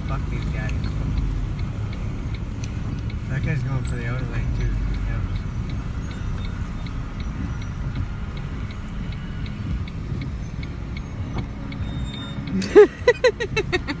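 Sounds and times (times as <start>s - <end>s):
car cabin rumble: 0.0s - 14.0s
faint regular ticking: 0.0s - 14.0s
person laughing loudly: 12.6s - 14.0s.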